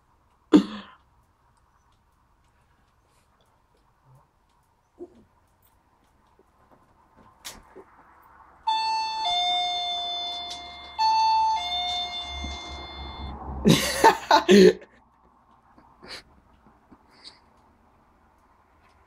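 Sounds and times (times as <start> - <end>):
two-tone doorbell chime: 8.7 - 13.5.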